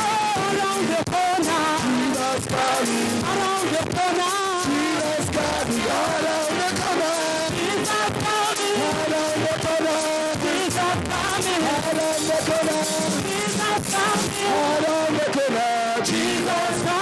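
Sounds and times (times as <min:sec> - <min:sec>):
instrumental accompaniment: 0:00.0 - 0:17.0
voices singing worship song: 0:00.0 - 0:17.0.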